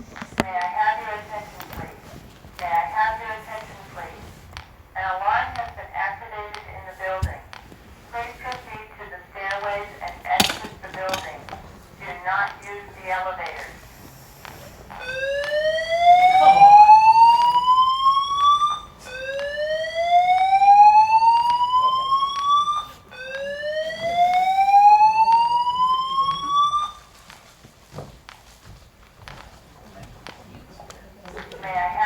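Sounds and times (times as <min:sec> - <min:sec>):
fire alarm whoop tone: 0:14.7 - 0:27.3.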